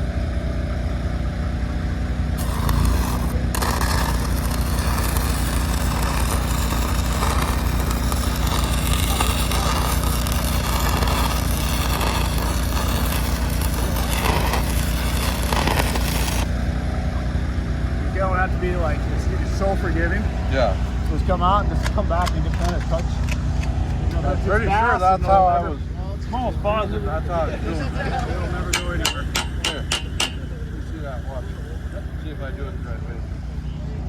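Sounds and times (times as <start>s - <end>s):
engine hum: 0.0s - 34.0s
welding arc crackling: 2.4s - 16.6s.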